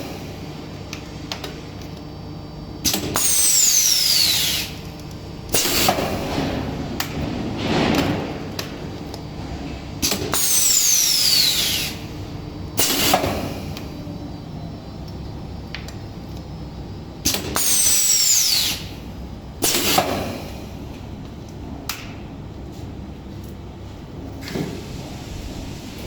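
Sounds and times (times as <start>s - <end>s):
hissing with falling whistle: 10.4s - 12.0s, 17.7s - 18.9s
burst of air release: 24.5s - 26.0s.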